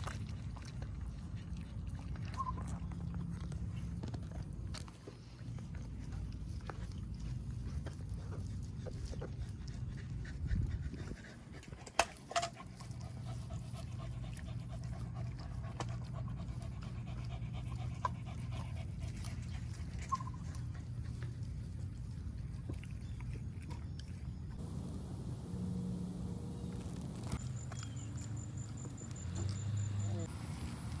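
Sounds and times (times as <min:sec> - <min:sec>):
dog panting: 0:03.1 - 0:24.3.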